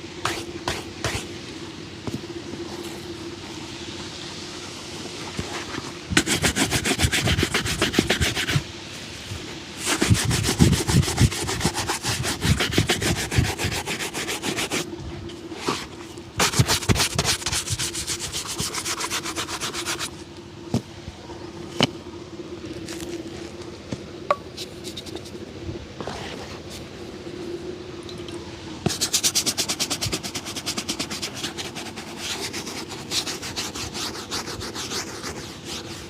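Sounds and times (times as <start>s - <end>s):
shoe brushing strokes: 0.0s - 1.4s, 4.9s - 20.3s, 28.8s - 36.0s.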